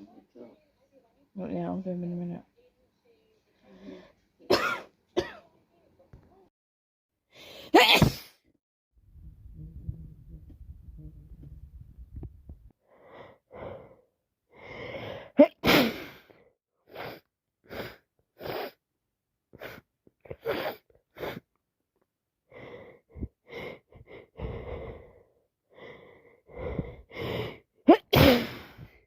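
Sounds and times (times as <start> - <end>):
woman sneezing: 7.6 - 8.4, 15.4 - 16.2, 27.9 - 28.9
woman breathing in: 12.9 - 15.3.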